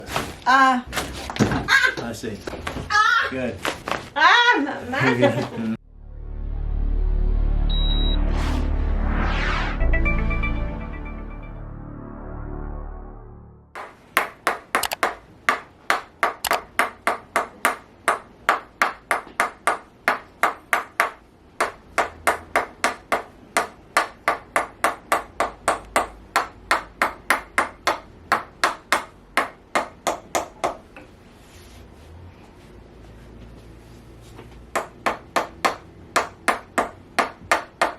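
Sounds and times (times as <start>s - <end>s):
sharp clicking taps: 14.8s - 15.6s.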